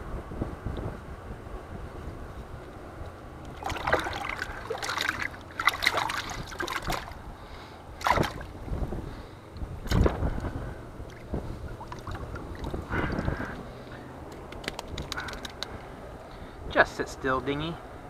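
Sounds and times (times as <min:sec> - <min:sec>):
low wind rumble: 0:00.0 - 0:18.0
water splashing and sloshing: 0:03.4 - 0:09.0, 0:09.8 - 0:15.8.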